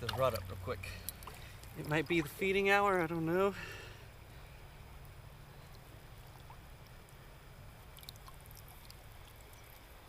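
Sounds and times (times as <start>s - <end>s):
small drips: 0.0s - 2.7s, 5.0s - 10.0s
low steady rumble: 0.0s - 10.0s
river water trickling: 0.0s - 10.0s.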